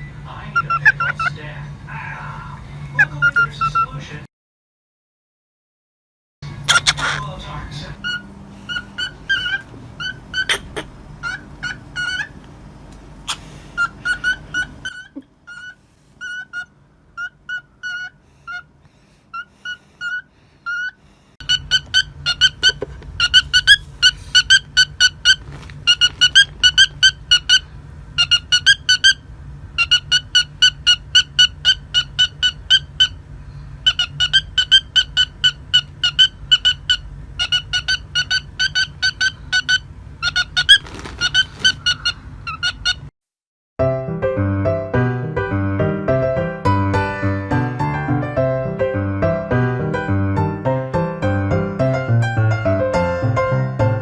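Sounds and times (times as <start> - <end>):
cockatiel imitating electronic beeps: 0.6 - 1.2, 3.0 - 3.9
cockatiel whistling: 8.0 - 12.4, 28.2 - 29.2, 33.9 - 43.0.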